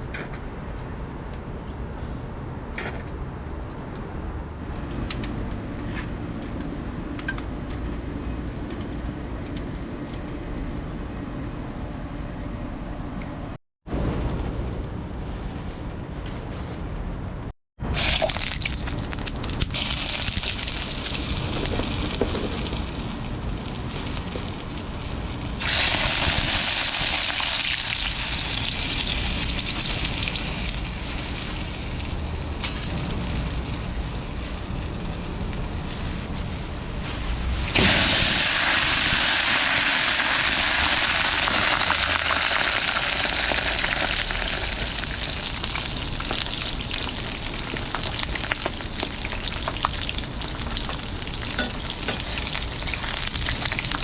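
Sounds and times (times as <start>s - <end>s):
small crackles: 18.1s - 26.0s, 41.6s - 54.0s.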